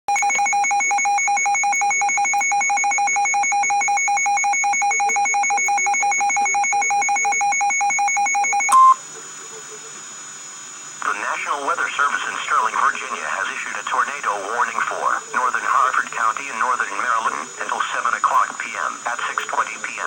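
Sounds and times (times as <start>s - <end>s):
pulsing electronic alert tone: 0.1s - 9.0s
short high beep: 0.2s - 9.0s
steady hiss: 9.0s - 20.0s.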